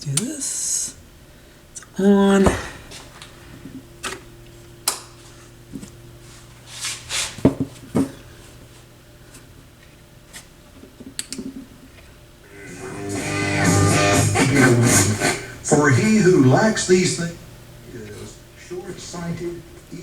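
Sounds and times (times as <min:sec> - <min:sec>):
stereo receiver hum: 0:01.7 - 0:06.7, 0:10.9 - 0:20.0
radio broadcast: 0:12.5 - 0:20.0.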